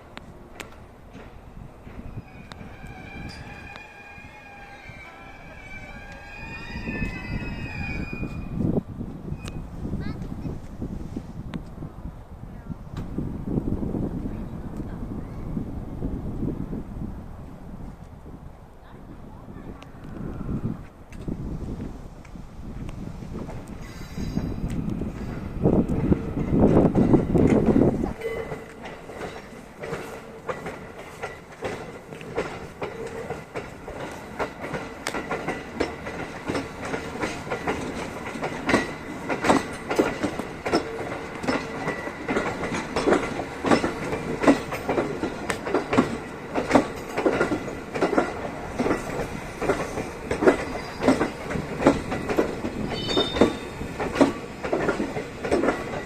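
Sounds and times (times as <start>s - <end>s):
train wheels clacking over rail joints: 22.2s - 56.0s.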